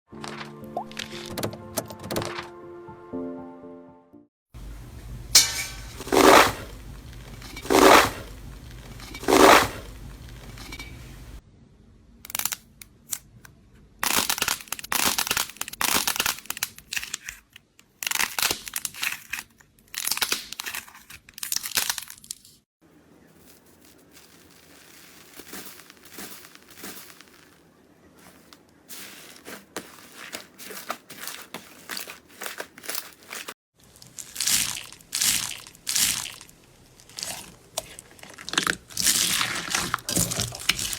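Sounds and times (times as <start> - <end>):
slime crackling and crunching: 5.7 - 11.4, 23.4 - 40.9.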